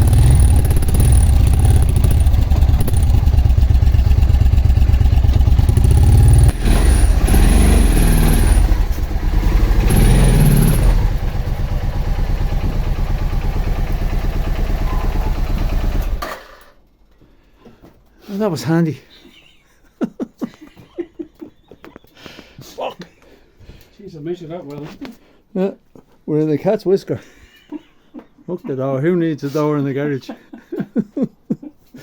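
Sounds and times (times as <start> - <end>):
motorcycle engine revving and idling: 0.0 - 16.3.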